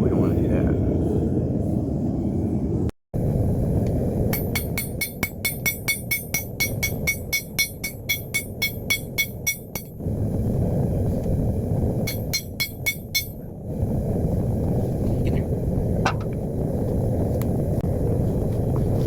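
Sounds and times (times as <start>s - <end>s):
forge roaring: 0.7s - 4.5s, 10.0s - 12.3s, 13.4s - 19.0s
hammer ringing on anvil: 4.4s - 9.9s, 12.1s - 13.4s.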